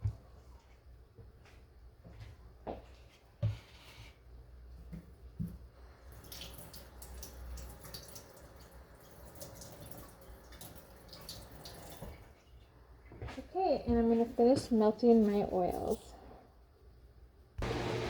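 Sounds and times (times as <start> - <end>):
tap water splashing into sink: 5.4 - 12.2.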